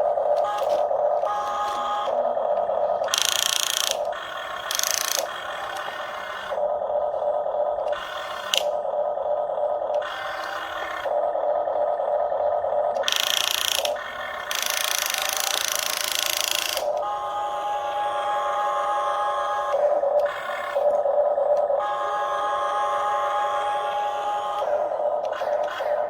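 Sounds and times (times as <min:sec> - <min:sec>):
electric motor whine: 0:00.0 - 0:26.0
harsh hissy motor sound: 0:13.0 - 0:20.9.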